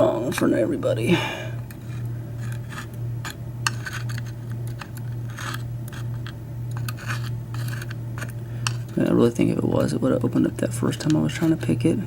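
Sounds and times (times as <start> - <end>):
steady low hum: 0.0 - 12.0
metal scraping: 1.7 - 10.0.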